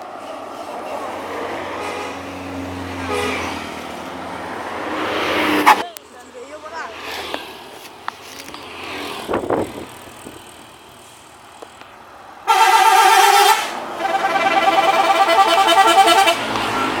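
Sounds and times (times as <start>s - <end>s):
musical bus horn: 1.7s - 2.3s, 3.0s - 3.6s, 12.4s - 17.0s.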